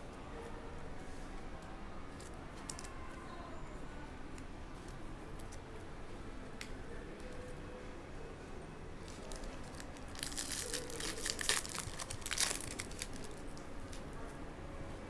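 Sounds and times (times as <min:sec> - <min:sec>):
foil wrapper tearing and crinkling: 0:09.1 - 0:14.0.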